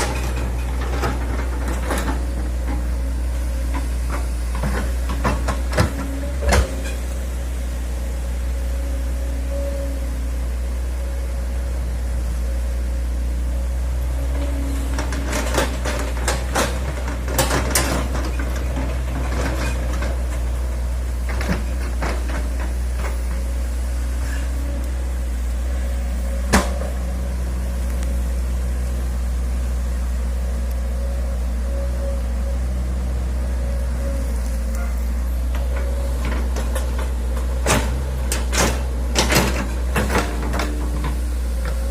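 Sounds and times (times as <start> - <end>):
excavator engine humming: 0.0 - 41.9.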